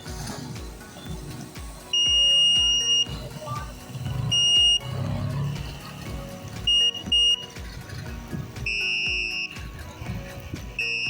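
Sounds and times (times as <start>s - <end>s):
background music: 0.0s - 11.0s
high electronic beeps: 0.9s - 8.0s, 8.6s - 9.8s, 10.8s - 11.0s
buzzy high alarm tone: 1.9s - 5.9s, 6.6s - 7.5s.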